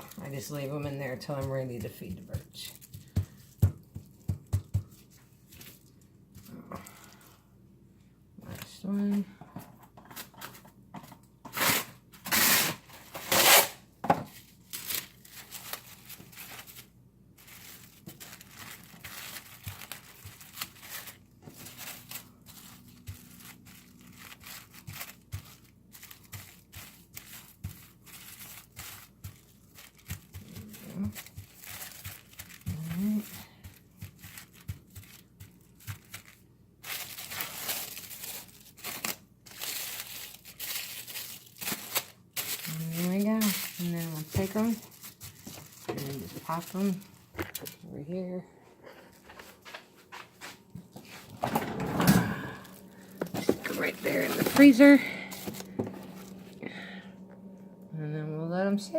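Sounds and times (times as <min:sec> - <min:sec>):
plastic wrap crinkling: 0:00.0 - 0:07.5, 0:11.6 - 0:48.0, 0:52.3 - 0:57.4
plastic wrap ripping: 0:11.5 - 0:47.8.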